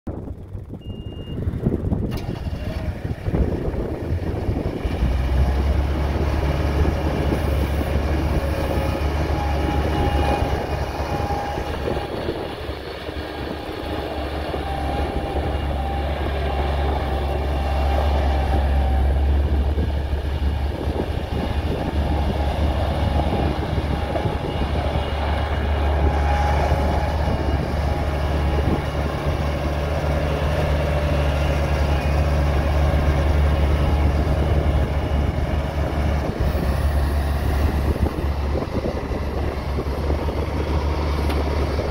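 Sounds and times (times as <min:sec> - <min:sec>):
diesel engine running: 0:00.1 - 0:41.9.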